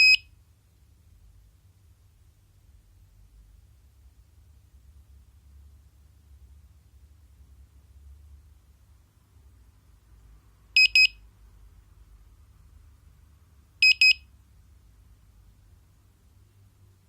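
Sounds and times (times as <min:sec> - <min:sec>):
siren short high-pitched beeps: 0:00.0 - 0:00.2.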